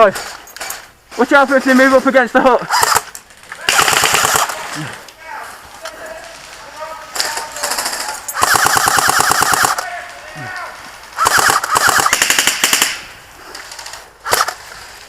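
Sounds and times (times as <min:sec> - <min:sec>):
airsoft rifle firing bursts: 0:02.7 - 0:04.7, 0:07.3 - 0:09.9, 0:11.2 - 0:13.1.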